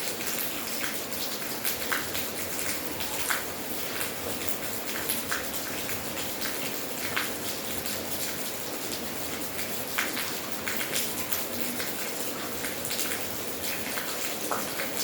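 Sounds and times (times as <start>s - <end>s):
raindrops ticking on a surface: 0.0s - 15.0s
steady rain falling: 0.0s - 15.0s.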